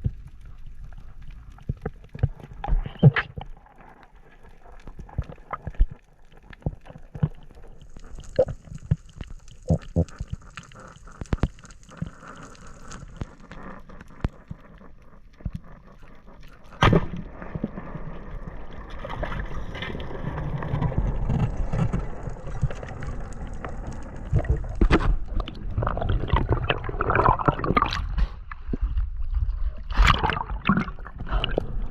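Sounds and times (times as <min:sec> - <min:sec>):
sharp clicks and crackles: 0:00.0 - 0:26.7
water noise: 0:00.0 - 0:31.9
water rushing and churning: 0:29.9 - 0:31.9.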